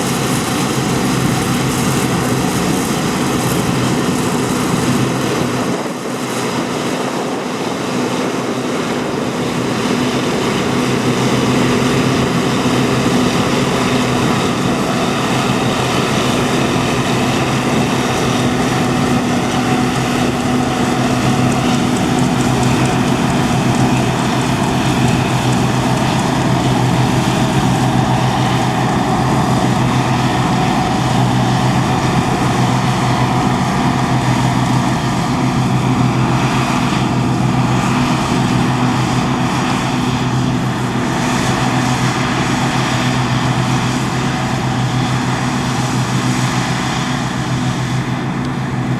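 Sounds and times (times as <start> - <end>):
diesel machinery engine drone: 0.0 - 48.9.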